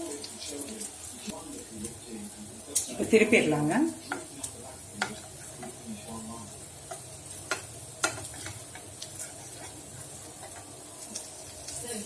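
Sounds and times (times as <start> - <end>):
patties sizzling in oil: 0.0 - 12.0
spatula clicking against pan: 4.1 - 5.8, 6.8 - 9.2.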